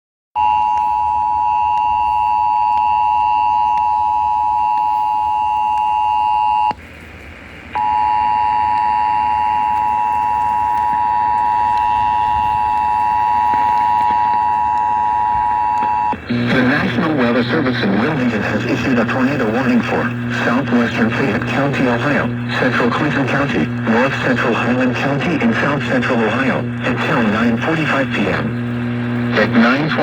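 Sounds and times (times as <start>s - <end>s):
two-tone emergency alert alarm: 0.4s - 6.8s, 7.8s - 16.2s.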